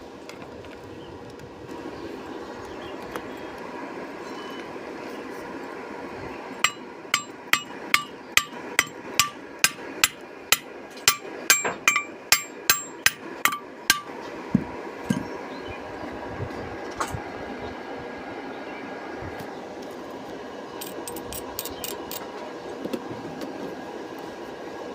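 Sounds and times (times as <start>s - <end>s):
hammer striking steel: 6.6s - 14.2s.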